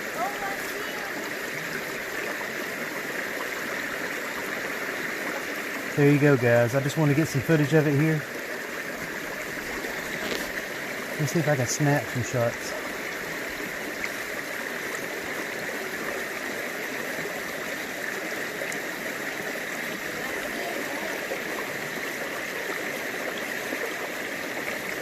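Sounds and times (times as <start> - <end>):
creek water running over rocks: 0.0 - 25.0.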